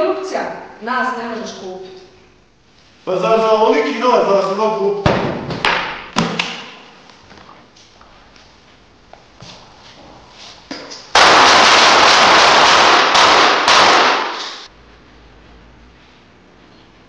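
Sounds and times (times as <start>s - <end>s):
automatic gunfire: 11.2s - 14.7s.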